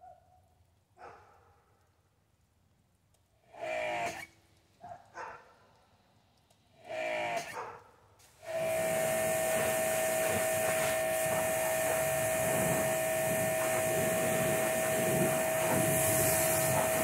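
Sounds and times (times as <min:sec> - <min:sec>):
pressure washer spray hiss: 0:08.2 - 0:17.0
motor whine: 0:08.4 - 0:17.0.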